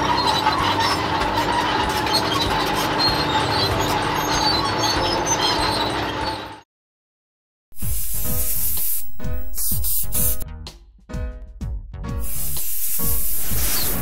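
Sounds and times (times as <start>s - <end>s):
mechanical rumble and clatter: 0.0s - 6.6s
steady tones: 7.8s - 10.4s.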